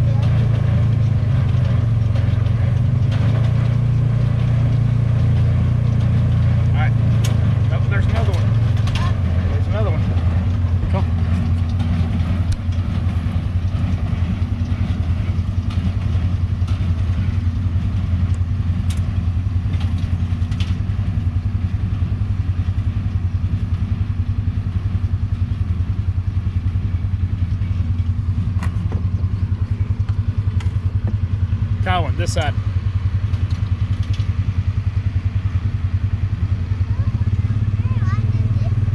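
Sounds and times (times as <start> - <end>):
tractor diesel engine running: 0.0 - 38.9
faint machinery clicks: 7.1 - 21.2, 32.7 - 34.6.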